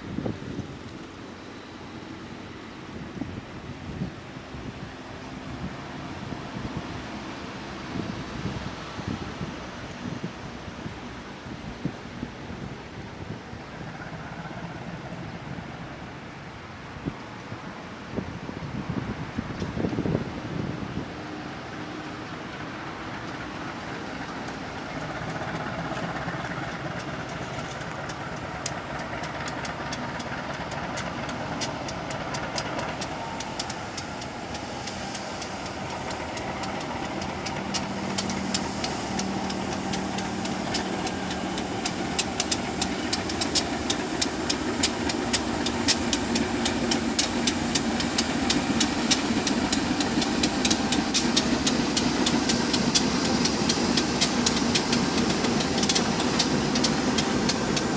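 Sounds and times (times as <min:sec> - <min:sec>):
machinery engine running: 0:20.5 - 0:57.9
sharp metallic clicks and knocks: 0:24.2 - 0:57.9.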